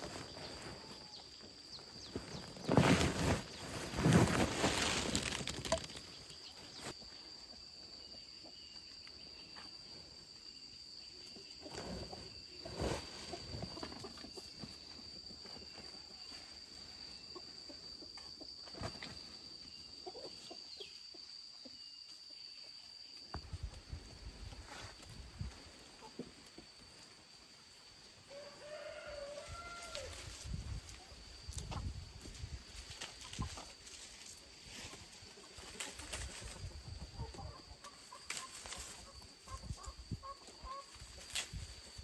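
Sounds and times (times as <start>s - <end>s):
loud rustle: 2.1s - 6.9s.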